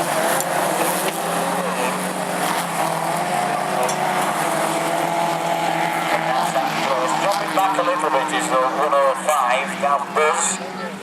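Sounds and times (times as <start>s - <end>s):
race car engines revving: 0.0s - 11.0s.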